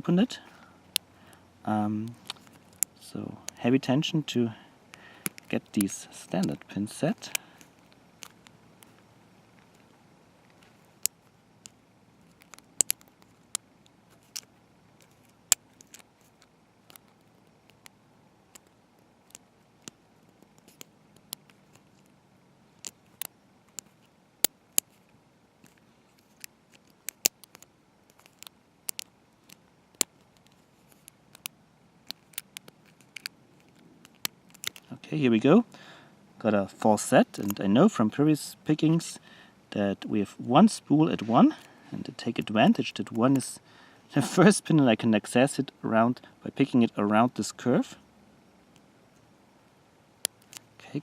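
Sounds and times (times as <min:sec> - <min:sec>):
lock pick metallic clicks: 0:11.0 - 0:13.6, 0:25.6 - 0:34.9.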